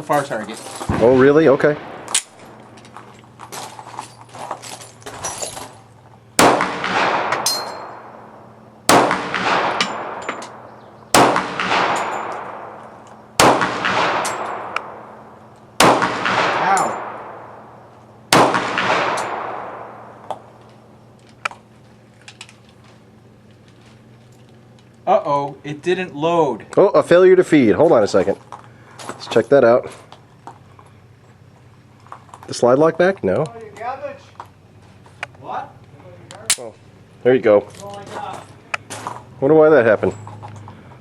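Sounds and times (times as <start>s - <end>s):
pistol shots with echo: 0.9s - 2.6s, 6.4s - 20.3s
gun handling clicks: 1.8s - 3.5s, 14.2s - 15.7s, 22.2s - 22.9s, 36.3s - 36.8s.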